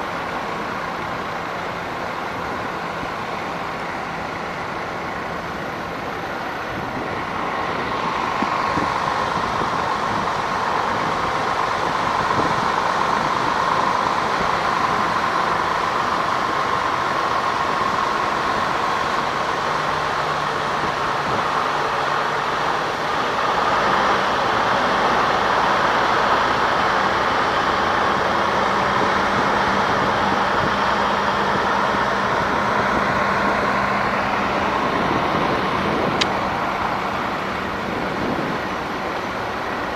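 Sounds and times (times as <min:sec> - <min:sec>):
road rushing noise: 0:00.0 - 0:39.9
steady whine: 0:00.0 - 0:39.9
vehicle engine running: 0:00.0 - 0:39.9.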